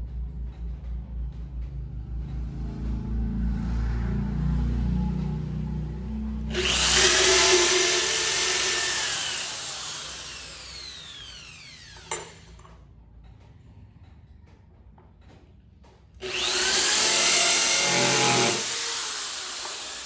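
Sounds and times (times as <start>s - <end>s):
electric drill whining: 6.5s - 12.6s, 16.2s - 20.0s.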